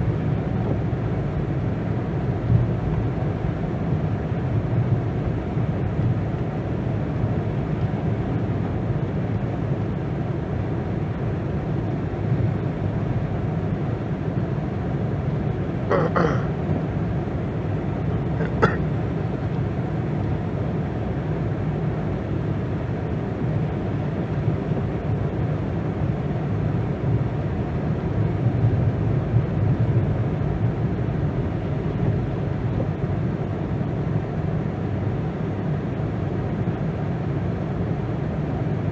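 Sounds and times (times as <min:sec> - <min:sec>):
car driving rumble: 0:15.3 - 0:19.6.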